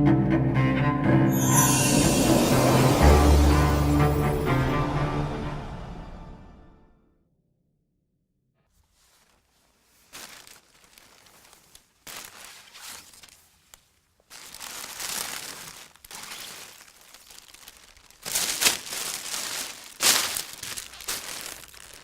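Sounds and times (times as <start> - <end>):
gift wrapping tearing and crumpling: 9.2 - 22.0.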